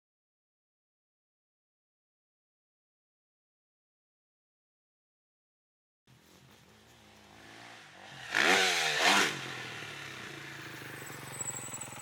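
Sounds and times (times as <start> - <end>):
car engine revving: 7.1 - 12.0.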